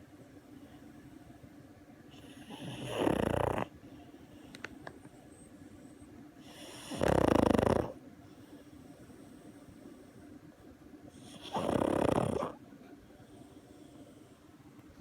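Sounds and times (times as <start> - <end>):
dog snoring: 2.1 - 3.8, 6.4 - 10.2, 11.1 - 12.6.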